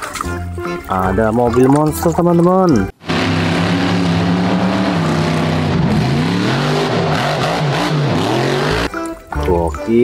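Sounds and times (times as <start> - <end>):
monster truck engine revving: 3.0 - 8.9.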